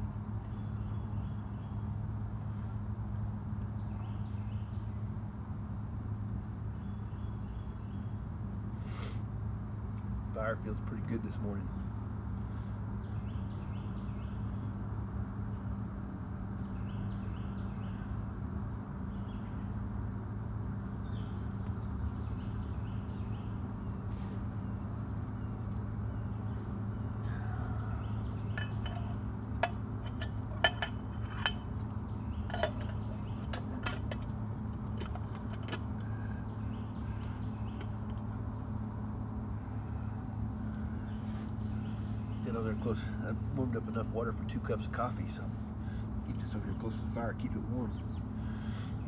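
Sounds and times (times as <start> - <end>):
small birds chirping: 0.0 - 5.2, 6.0 - 9.2, 9.9 - 49.0
steady low hum: 0.0 - 49.0
metal cookware clinking: 28.5 - 31.8, 32.4 - 34.3.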